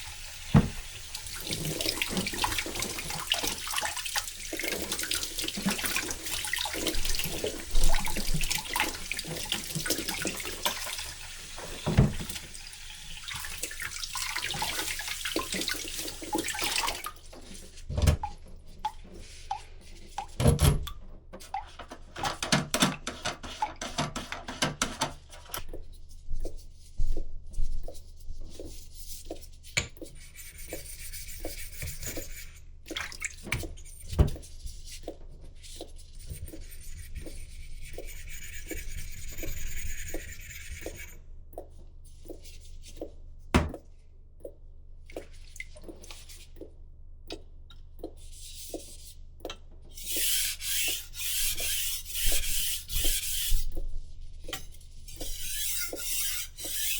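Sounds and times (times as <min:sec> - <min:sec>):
knife scraping on sharpening stone: 0:55.3 - 0:56.9.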